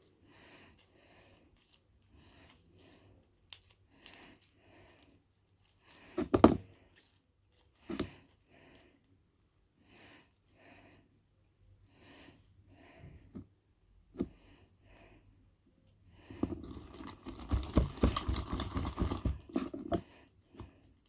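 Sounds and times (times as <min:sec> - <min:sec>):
slime scraping and squishing: 0:00.0 - 0:09.0, 0:16.2 - 0:21.0.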